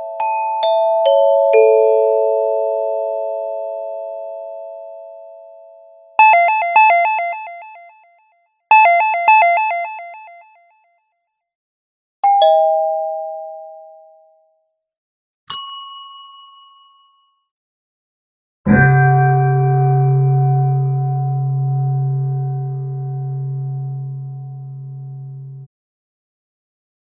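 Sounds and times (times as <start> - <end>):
two-note ding-dong chime: 12.2 - 14.4
bright bell ding: 15.5 - 17.1.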